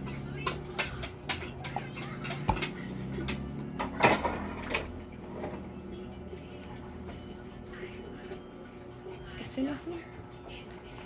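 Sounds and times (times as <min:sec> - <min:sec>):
utensils clinking against a bowl: 0:00.0 - 0:05.7.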